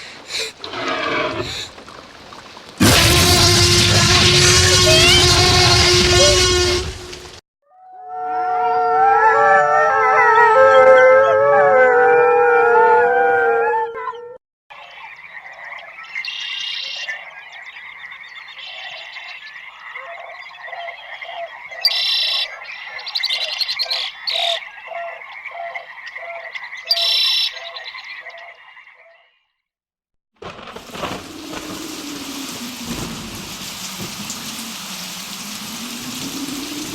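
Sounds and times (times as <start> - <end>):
chorus of animal howls: 8.2 - 14.4
frogs trilling and croaking: 14.7 - 29.4.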